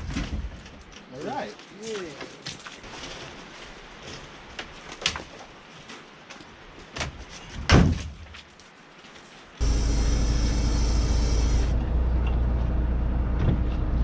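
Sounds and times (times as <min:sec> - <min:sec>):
knocks and bangs of heavy object: 0:07.0 - 0:08.3.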